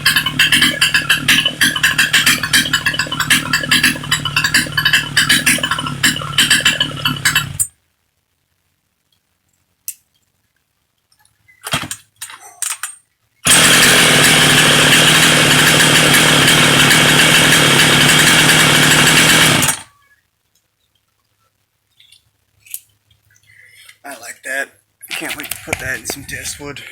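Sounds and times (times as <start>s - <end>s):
chainsaw running at high revs: 0.0s - 7.6s, 13.5s - 19.9s
click: 9.9s - 10.3s.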